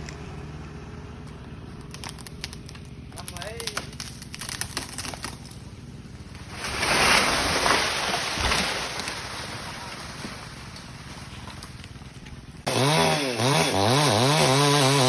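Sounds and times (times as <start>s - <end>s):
crackling of twigs: 1.2s - 12.7s
rush of leaves: 6.0s - 12.6s
low thud of branch landing: 6.4s - 12.4s.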